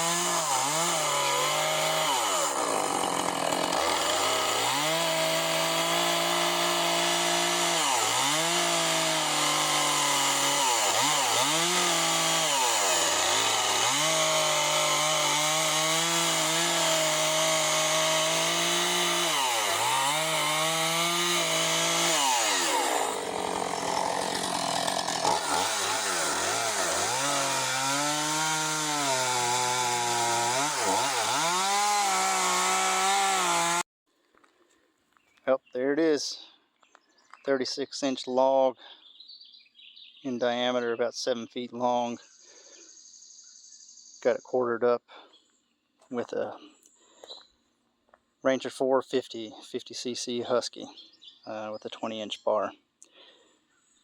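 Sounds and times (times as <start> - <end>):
chainsaw cutting log: 0.0 - 33.9.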